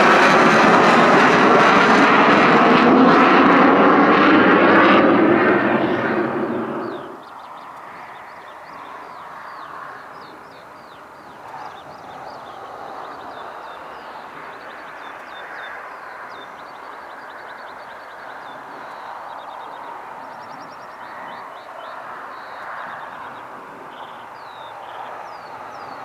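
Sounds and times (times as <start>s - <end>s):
distant rumble: 0.0s - 7.2s
jet noise: 0.0s - 7.4s
small birds chirping: 5.4s - 26.0s.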